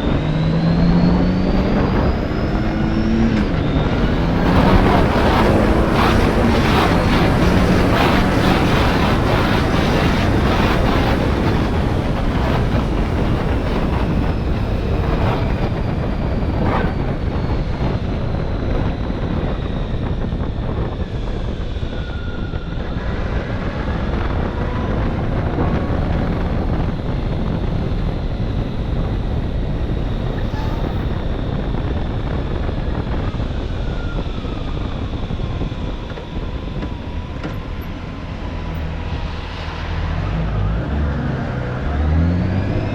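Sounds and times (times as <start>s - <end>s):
faint tone rising and falling: 0.0s - 17.0s
motorcycle engine and road noise: 0.0s - 42.9s
wind buffeting microphone: 0.0s - 42.9s.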